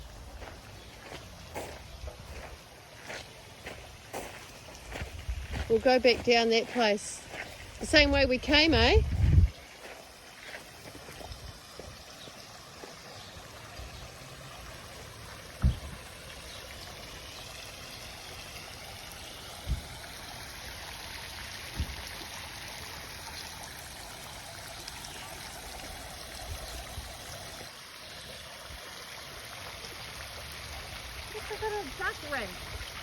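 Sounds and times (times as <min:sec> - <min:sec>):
flowing water rushing: 0:00.0 - 0:33.0.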